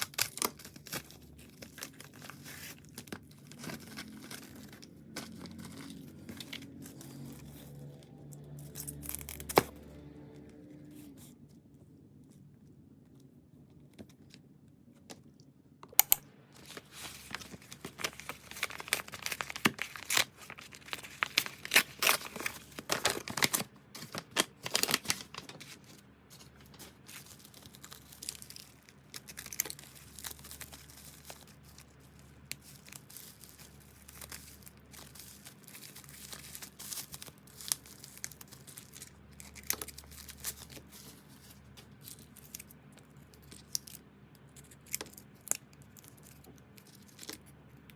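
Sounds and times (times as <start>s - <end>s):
packaging tearing and crinkling: 0.0s - 9.8s, 16.6s - 44.0s.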